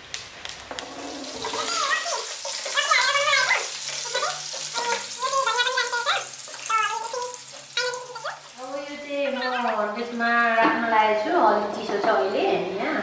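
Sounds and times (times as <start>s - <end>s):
meat sizzling in a pan: 0.0s - 10.2s.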